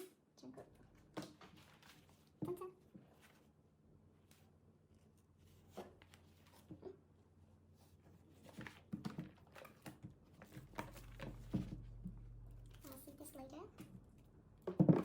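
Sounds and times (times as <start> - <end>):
paper rustling: 1.4 - 2.4.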